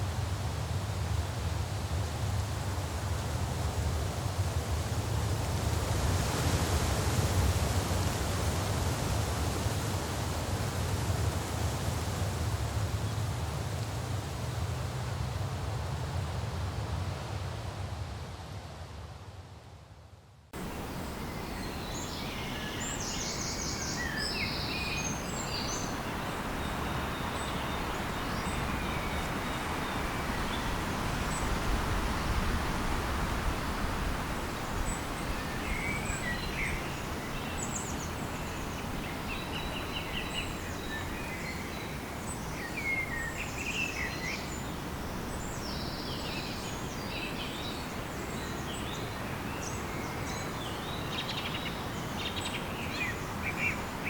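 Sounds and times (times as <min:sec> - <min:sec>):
small birds chirping: 0:20.6 - 0:32.4.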